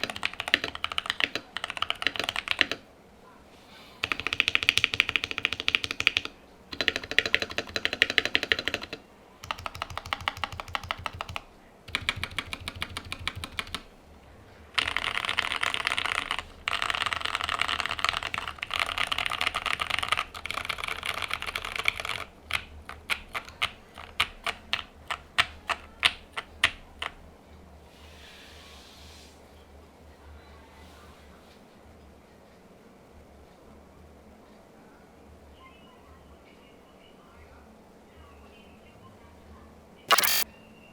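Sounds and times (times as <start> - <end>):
mechanical keyboard typing: 0.0 - 2.9, 4.0 - 13.9, 14.8 - 27.2, 40.1 - 40.4.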